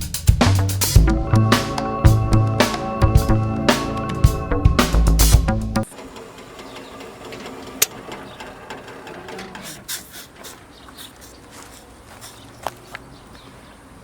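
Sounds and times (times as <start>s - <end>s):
background music with a beat: 0.0s - 5.9s
faint clicks and rattles: 5.9s - 11.4s.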